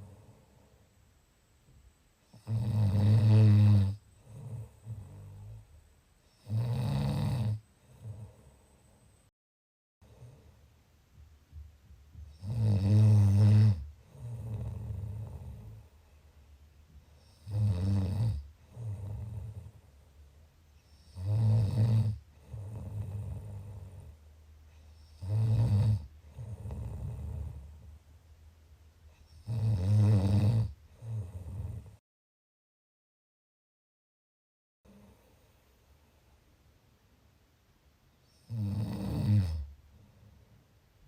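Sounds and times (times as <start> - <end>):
quiet breath: 0.0 - 9.3, 10.0 - 28.1, 29.0 - 29.7, 34.9 - 36.6, 39.5 - 41.0
person snoring: 2.3 - 5.6, 6.3 - 8.6, 12.3 - 15.9, 17.2 - 19.8, 20.9 - 24.1, 25.0 - 27.7, 29.3 - 32.0, 38.4 - 39.7.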